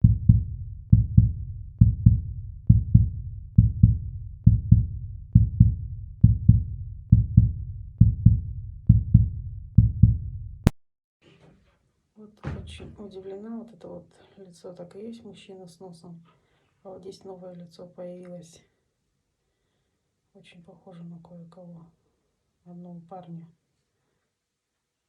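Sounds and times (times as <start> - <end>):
heartbeat double thump: 0.0 - 10.7.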